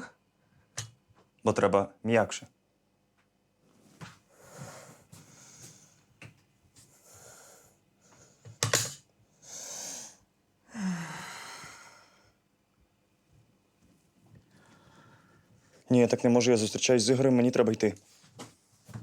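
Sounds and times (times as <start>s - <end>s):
person straining and exhaling: 10.7s - 12.2s.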